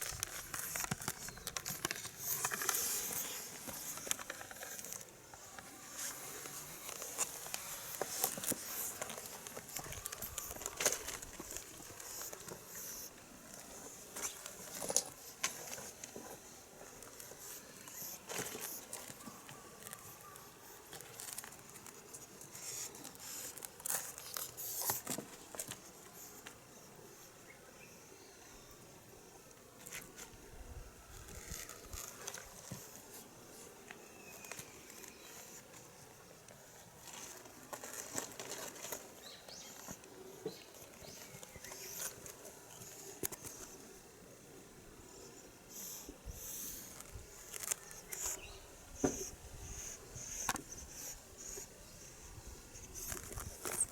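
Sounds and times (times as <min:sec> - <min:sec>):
scuffling and rustling: 0:00.0 - 0:26.6, 0:31.1 - 0:43.8
kittens' paws pattering: 0:00.0 - 0:27.3, 0:31.1 - 0:43.9, 0:45.7 - 0:51.7, 0:52.7 - 0:53.9.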